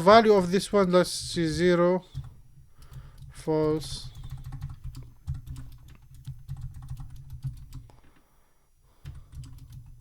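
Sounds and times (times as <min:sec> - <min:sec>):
typing on computer keyboard: 0:01.2 - 0:08.0, 0:09.0 - 0:10.0.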